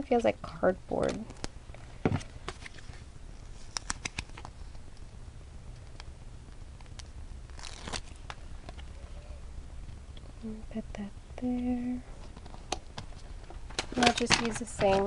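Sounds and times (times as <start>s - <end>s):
paper rustling: 12.2s - 15.0s.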